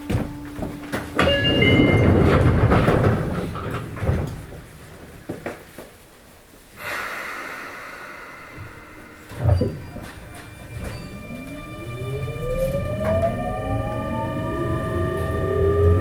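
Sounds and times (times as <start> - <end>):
sliding doors rattling: 0.0 - 5.8
short chime tones: 1.2 - 2.1.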